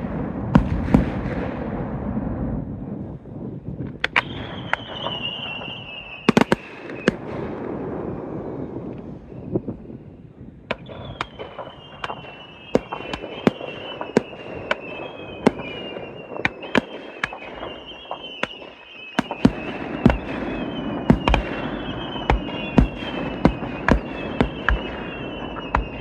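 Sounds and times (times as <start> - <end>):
fireworks bangs and cracks: 0.0 - 3.0, 3.7 - 9.0, 10.7 - 26.0
deep fireworks booms: 0.0 - 26.0
high falling whistle: 4.2 - 7.2, 10.8 - 26.0.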